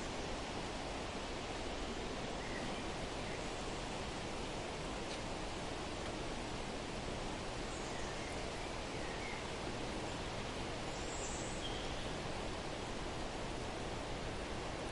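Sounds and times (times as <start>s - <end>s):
outdoor background hiss: 0.0s - 14.9s
faint bird chirps: 7.7s - 10.3s, 10.9s - 12.2s.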